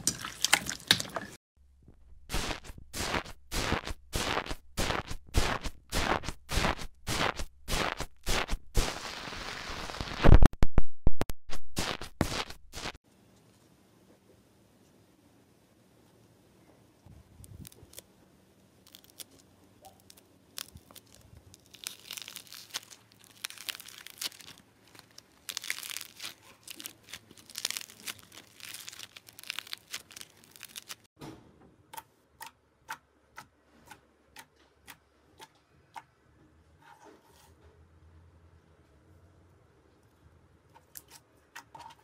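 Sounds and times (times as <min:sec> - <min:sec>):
slime crackling and crinkling: 0:02.3 - 0:08.9, 0:18.8 - 0:31.1
sharp pops: 0:02.3 - 0:13.0.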